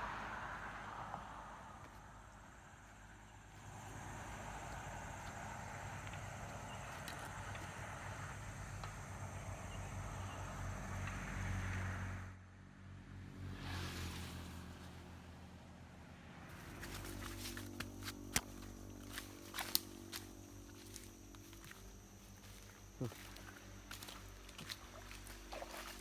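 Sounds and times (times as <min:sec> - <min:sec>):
small engine humming: 0:16.5 - 0:26.0.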